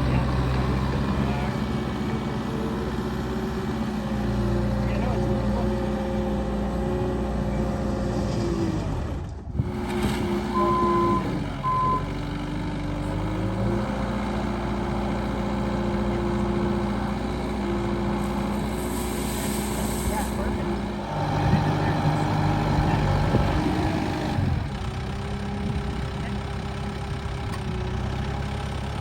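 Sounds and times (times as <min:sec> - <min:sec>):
diesel engine running: 0:00.0 - 0:29.0
short electronic beeps: 0:10.5 - 0:12.1.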